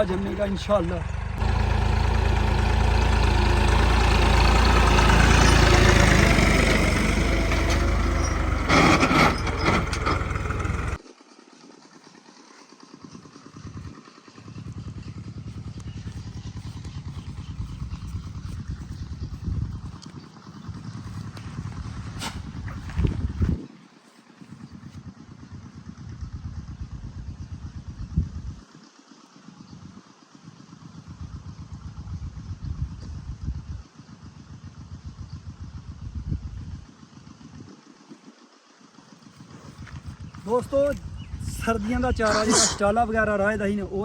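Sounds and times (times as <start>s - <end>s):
diesel engine running: 0.0s - 11.0s, 13.0s - 23.6s, 39.2s - 44.0s.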